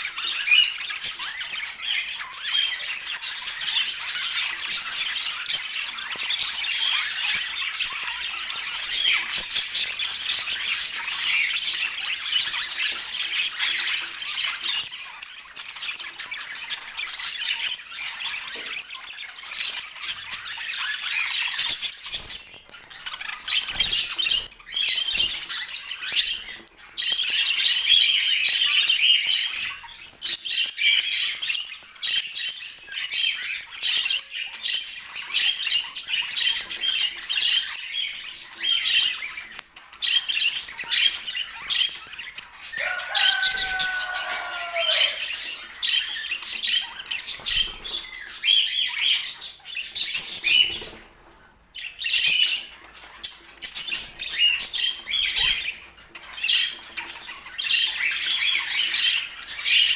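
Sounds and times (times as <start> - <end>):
budgerigars chattering and chirping: 0.0 - 59.9
low drawn-out bird call: 42.8 - 45.4.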